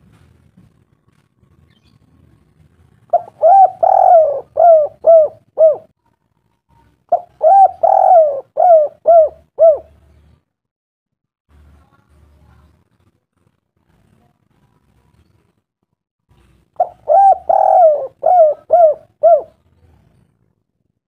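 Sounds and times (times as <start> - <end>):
bird calling: 3.2 - 5.8, 7.1 - 9.9, 16.8 - 19.5.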